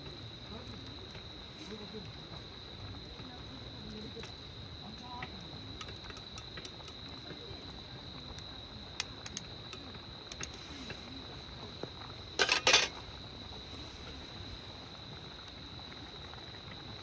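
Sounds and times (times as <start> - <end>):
crickets trilling: 0.0 - 17.0
rattle of something handled: 12.4 - 13.0.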